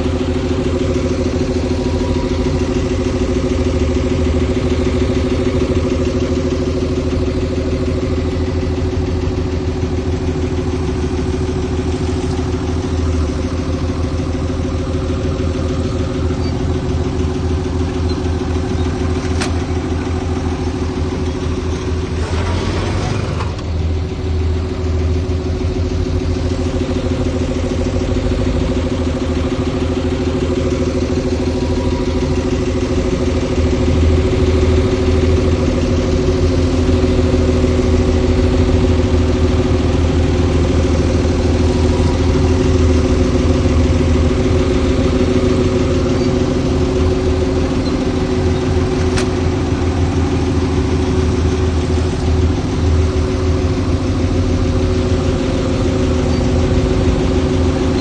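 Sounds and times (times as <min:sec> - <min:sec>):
diesel engine low rumble: 0:00.0 - 0:58.0.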